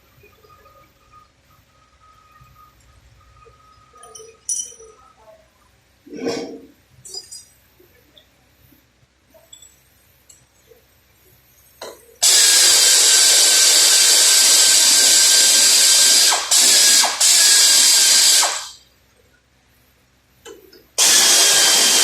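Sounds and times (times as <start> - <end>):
power tool running: 12.2 - 18.8, 21.0 - 22.0.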